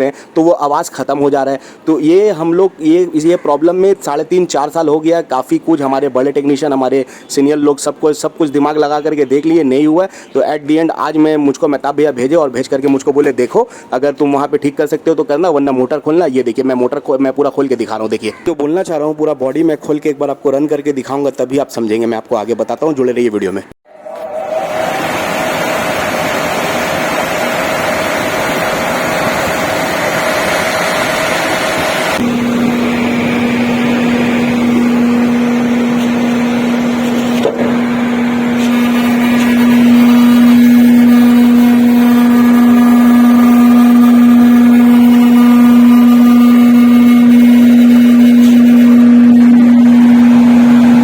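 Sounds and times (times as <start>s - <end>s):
rush of air: 23.9s - 32.2s
air conditioner humming: 23.9s - 51.0s.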